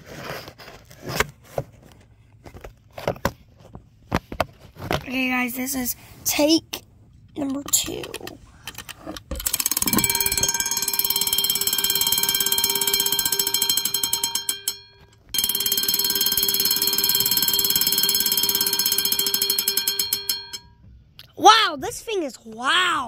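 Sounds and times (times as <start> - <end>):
fire alarm bell ringing: 9.4 - 20.8.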